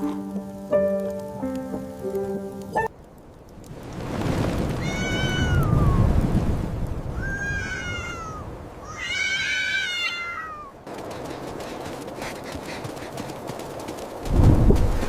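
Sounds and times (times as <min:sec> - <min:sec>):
storm wind rumble: 0:02.7 - 0:15.0
cat meowing: 0:04.8 - 0:06.1, 0:07.1 - 0:10.7.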